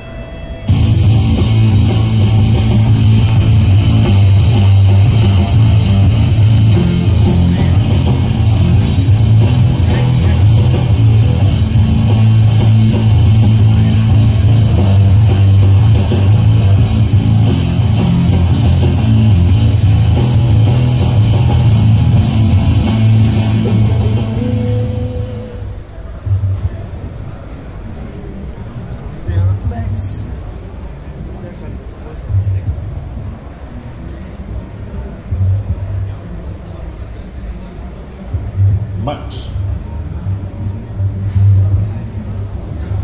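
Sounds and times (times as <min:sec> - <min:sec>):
loud rock music: 0:00.0 - 0:25.7.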